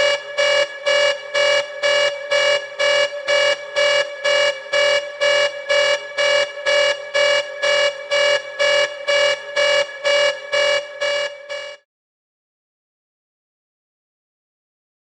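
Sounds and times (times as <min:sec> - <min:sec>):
pulsing alarm buzzer: 0:00.0 - 0:11.9.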